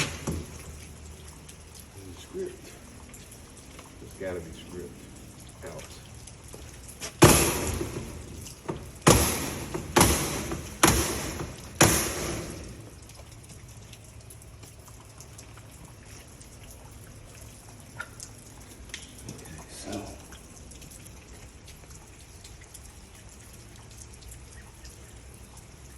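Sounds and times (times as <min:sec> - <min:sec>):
sharp knocks with hissing rattle: 0:00.0 - 0:01.0, 0:06.5 - 0:13.3.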